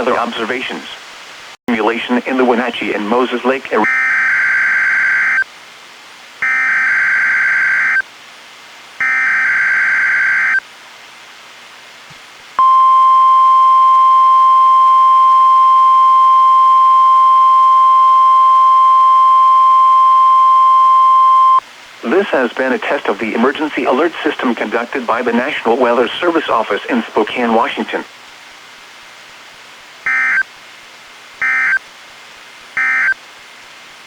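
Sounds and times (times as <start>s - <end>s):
buzzing data tones: 6.4s - 8.0s, 9.0s - 10.6s, 30.1s - 30.5s, 31.4s - 31.8s, 32.8s - 33.2s.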